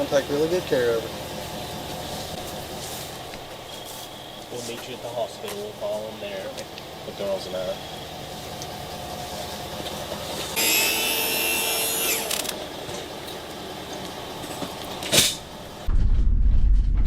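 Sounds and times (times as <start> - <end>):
mechanical rattling and grinding: 11.5 - 13.1.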